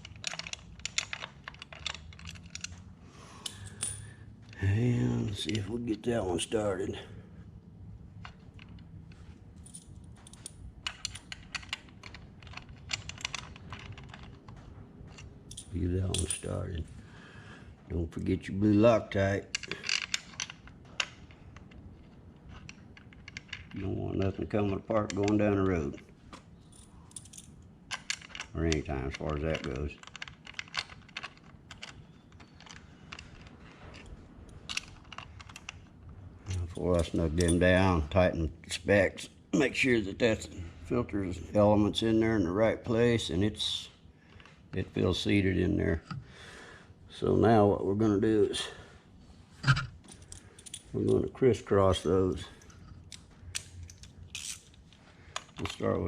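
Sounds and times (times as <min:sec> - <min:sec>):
metal bolts clicking and tapping: 0:00.0 - 0:04.1, 0:08.2 - 0:16.7, 0:18.8 - 0:38.0, 0:51.9 - 0:56.0
metallic clicks of small hardware: 0:52.5 - 0:55.8.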